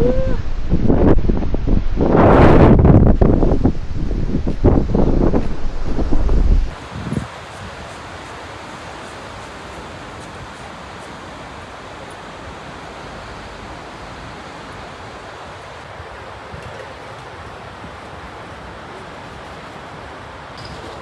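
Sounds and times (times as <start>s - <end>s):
strong wind rushing: 0.0s - 16.6s
distant ocean surf: 6.7s - 21.0s.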